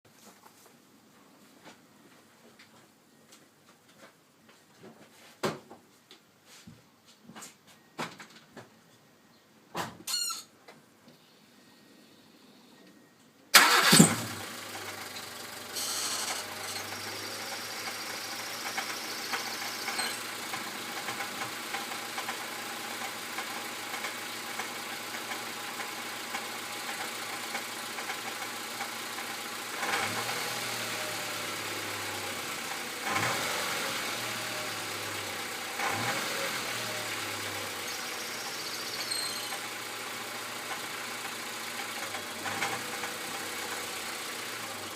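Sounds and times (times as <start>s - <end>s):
car engine starting and idling: 13.5s - 44.9s.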